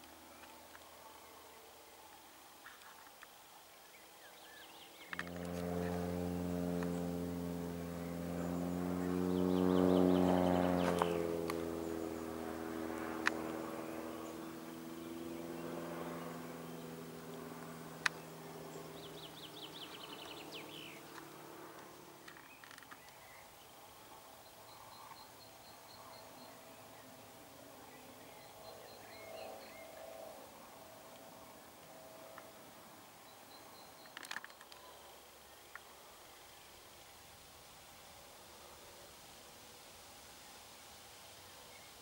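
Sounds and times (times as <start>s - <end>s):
birds chirping: 4.5s - 23.6s
engine passing by: 5.1s - 22.9s.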